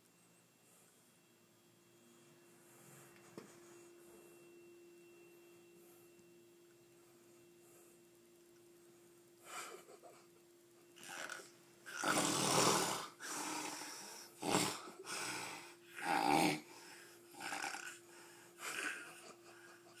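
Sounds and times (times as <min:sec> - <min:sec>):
person snoring heavily: 0:11.0 - 0:19.1.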